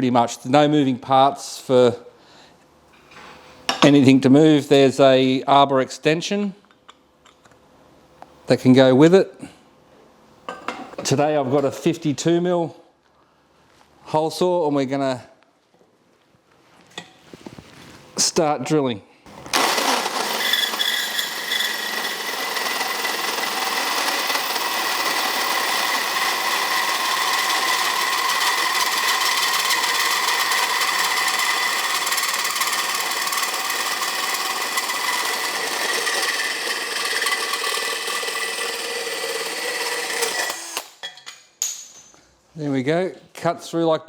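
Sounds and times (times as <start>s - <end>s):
power drill with holesaw grinding: 19.3s - 41.0s.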